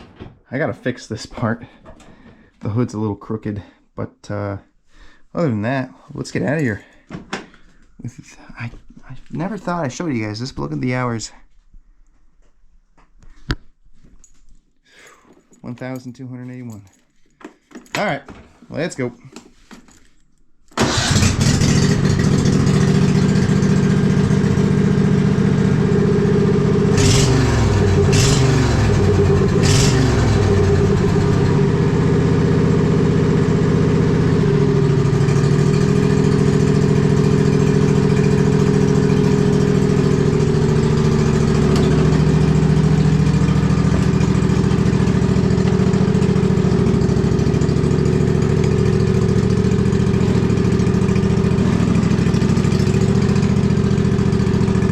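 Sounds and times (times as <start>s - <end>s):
sharp engine knocks: 0.0s - 0.6s
mower engine running: 20.8s - 54.9s.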